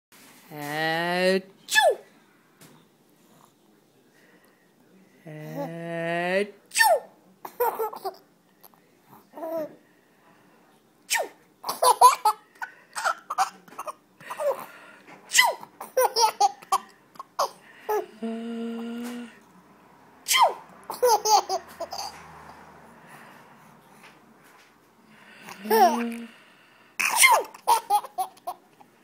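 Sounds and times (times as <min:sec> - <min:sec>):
baby giggling and laughing: 0:07.5 - 0:08.2, 0:11.6 - 0:14.7, 0:15.4 - 0:18.2, 0:20.4 - 0:22.3, 0:25.5 - 0:26.2, 0:27.0 - 0:28.7.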